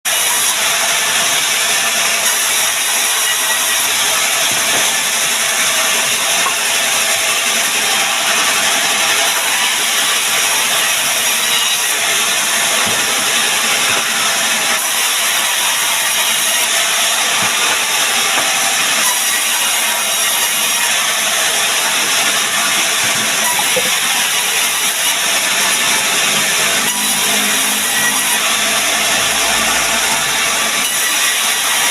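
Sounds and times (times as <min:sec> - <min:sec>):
woodworking machine hissing: 0:00.1 - 0:31.9.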